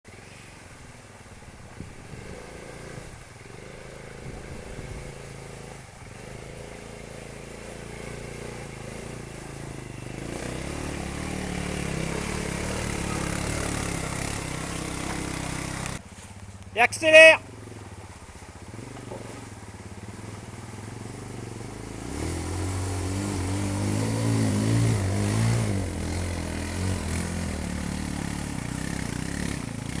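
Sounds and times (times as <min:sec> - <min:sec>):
quad bike engine revving: 0:01.6 - 0:16.1, 0:16.8 - 0:30.0.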